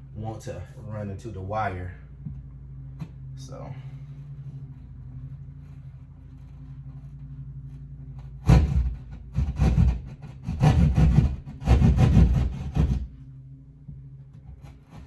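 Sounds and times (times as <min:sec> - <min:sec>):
steady low hum: 0:00.0 - 0:15.0
hand saw rasping through drywall: 0:08.2 - 0:13.2, 0:14.4 - 0:15.0.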